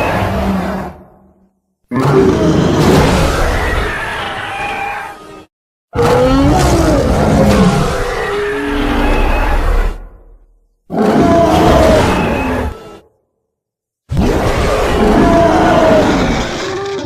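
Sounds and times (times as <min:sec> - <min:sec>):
monster roar: 0:01.9 - 0:05.2, 0:06.0 - 0:10.2, 0:10.9 - 0:13.0, 0:14.1 - 0:17.0.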